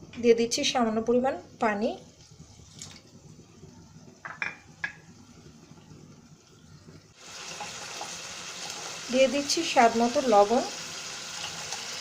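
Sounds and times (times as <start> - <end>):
spice paste sizzling in a pot: 7.1 - 12.0.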